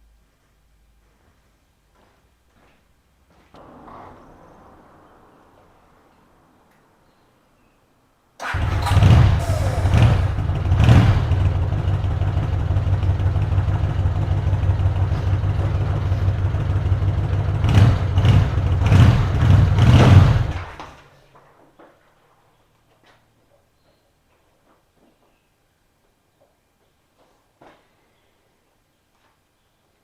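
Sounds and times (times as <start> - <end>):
motorcycle engine revving and idling: 8.4 - 20.8.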